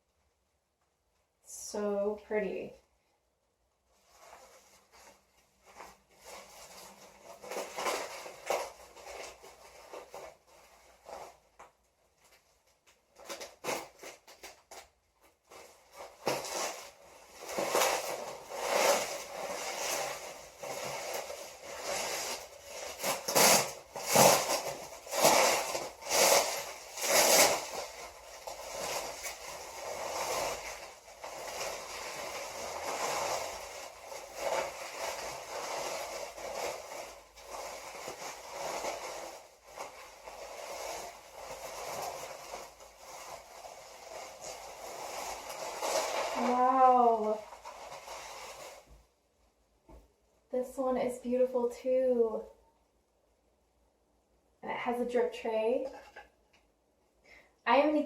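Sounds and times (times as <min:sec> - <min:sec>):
packing material crinkling: 0:04.0 - 0:49.0.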